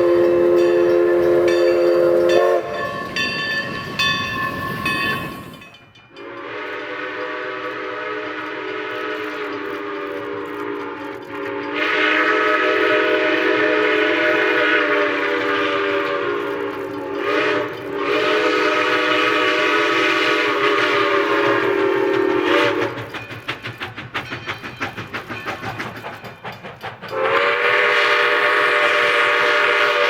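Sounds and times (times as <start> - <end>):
steam whistle chord: 0.0 - 3.4, 6.1 - 23.0, 27.1 - 30.0
quick regular clatter: 22.8 - 27.1.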